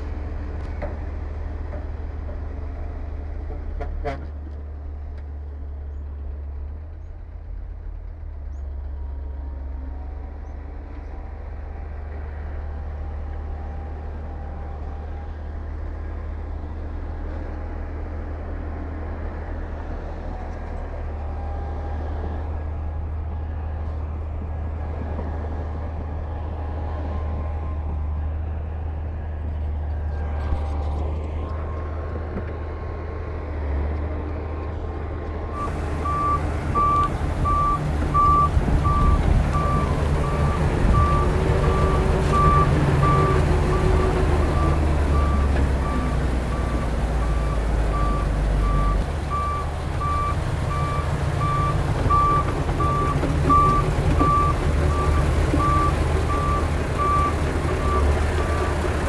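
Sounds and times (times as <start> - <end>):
diesel machinery rumbling: 0.0 - 59.0
reversing alarm beeping: 35.6 - 58.6.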